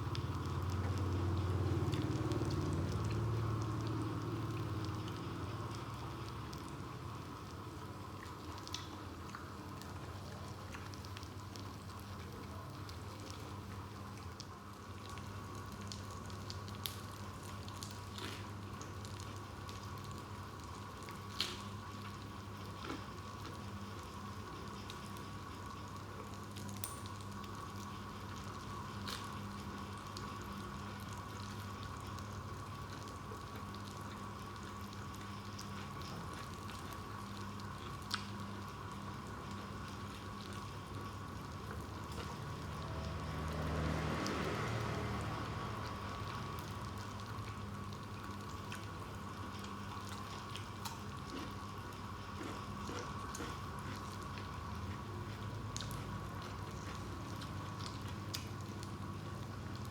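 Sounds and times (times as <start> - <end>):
sharp pops and crackles: 21.0 - 22.1, 26.6 - 27.4.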